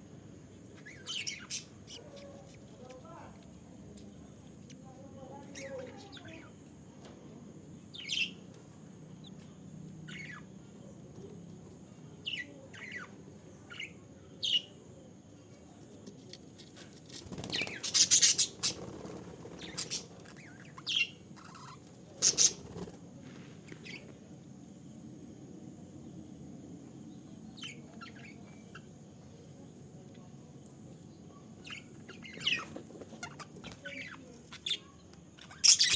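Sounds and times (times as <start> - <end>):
baby parrots chirping: 0.8 - 3.1, 5.4 - 6.6, 7.9 - 8.4, 10.1 - 10.5, 12.2 - 14.6, 17.2 - 22.9, 23.8 - 24.1, 27.6 - 28.9, 31.6 - 35.9
parrots squawking harshly: 35.4 - 35.9.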